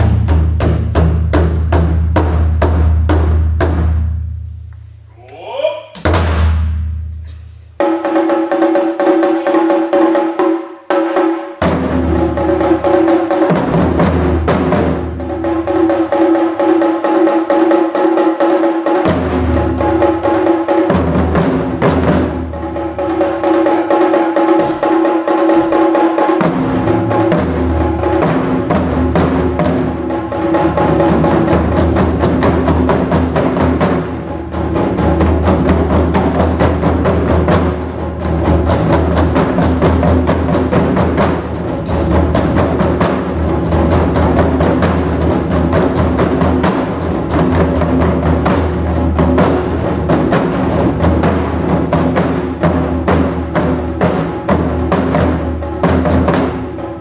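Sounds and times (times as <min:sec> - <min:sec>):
deep low drum notes: 0:00.0 - 0:04.2
taiko drum music: 0:00.0 - 0:57.0.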